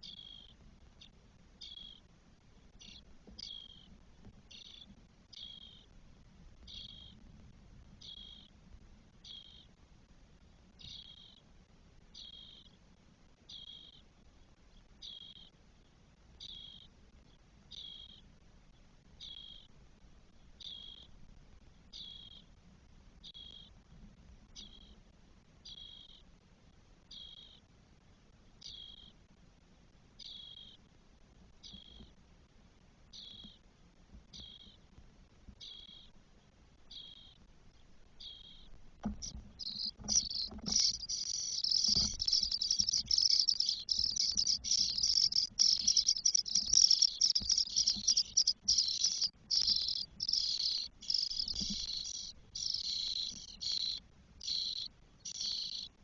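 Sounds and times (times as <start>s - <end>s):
nestlings calling: 38.2s - 55.9s.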